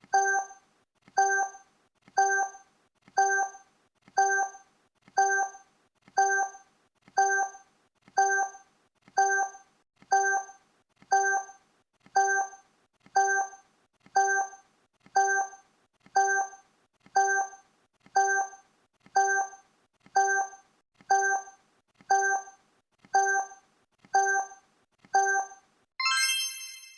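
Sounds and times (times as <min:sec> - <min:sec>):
electronic timer blips: 0:00.1 - 0:00.6, 0:01.2 - 0:01.6, 0:02.2 - 0:02.6, 0:03.2 - 0:03.6, 0:04.2 - 0:04.6, 0:05.2 - 0:05.6, 0:06.2 - 0:06.6, 0:07.2 - 0:07.6, 0:08.2 - 0:08.6, 0:09.2 - 0:11.6, 0:12.2 - 0:12.6, 0:13.2 - 0:13.6, 0:14.2 - 0:14.6, 0:15.2 - 0:15.6, 0:16.2 - 0:19.6, 0:20.2 - 0:22.6, 0:23.2 - 0:23.6, 0:24.2 - 0:24.6, 0:25.2 - 0:26.9.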